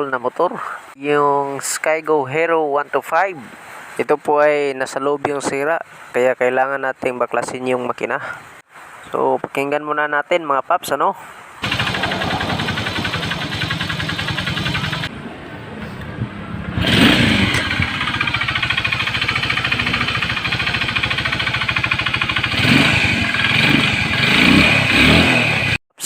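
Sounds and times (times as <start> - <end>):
clanking inside engine: 11.6 - 15.1
motorcycle engine revving: 11.6 - 15.4, 16.6 - 25.8.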